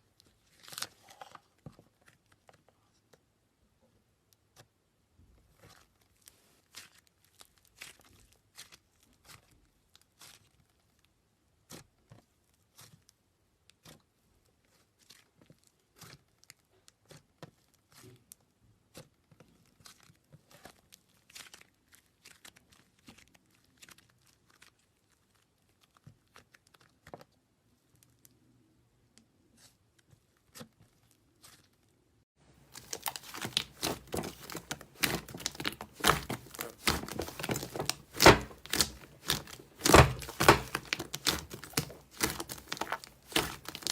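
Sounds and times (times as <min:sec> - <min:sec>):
slime squeezed and stretched: 0:32.7 - 0:43.9.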